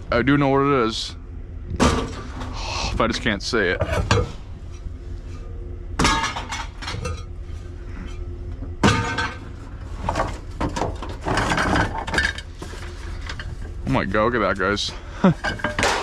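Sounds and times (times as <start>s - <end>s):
steady low hum: 0.0s - 16.0s
junk clattering crashes: 1.8s - 2.6s, 3.8s - 4.8s, 6.0s - 7.4s, 8.1s - 13.8s, 14.8s - 16.0s.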